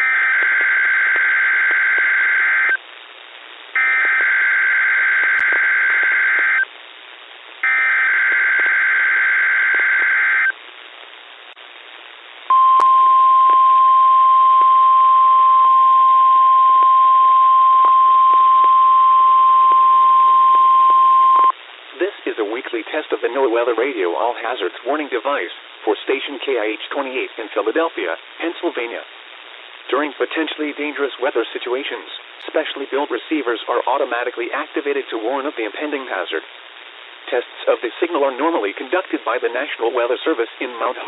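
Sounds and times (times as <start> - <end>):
digital data burst tones: 0.0 - 2.8, 3.8 - 6.7, 7.6 - 10.6
steady warning alarm tone: 0.0 - 2.8, 3.8 - 6.7, 7.6 - 10.5
radio hiss: 0.0 - 12.6, 14.6 - 41.0.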